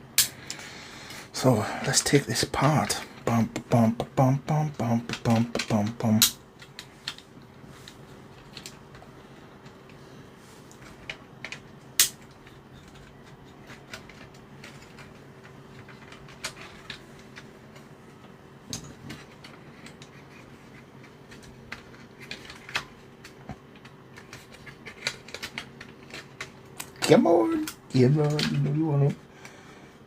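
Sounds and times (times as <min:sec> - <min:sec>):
faint hum: 0:00.0 - 0:30.0
plastic parts clicking: 0:03.9 - 0:09.0, 0:10.7 - 0:17.8, 0:18.7 - 0:28.8.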